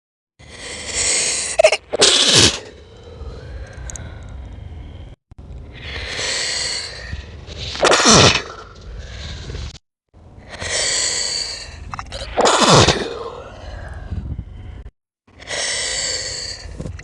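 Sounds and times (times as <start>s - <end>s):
breathy in-breath: 0.4s - 1.6s, 2.6s - 7.6s, 8.5s - 9.6s, 10.4s - 11.9s, 13.0s - 17.0s.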